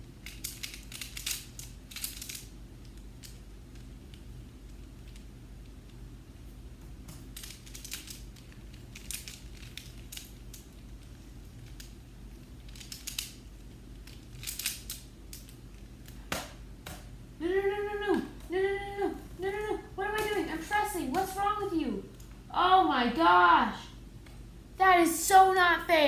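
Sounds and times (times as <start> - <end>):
puzzle cube plastic clacking: 0.2 - 6.0, 7.2 - 12.0, 12.6 - 16.5.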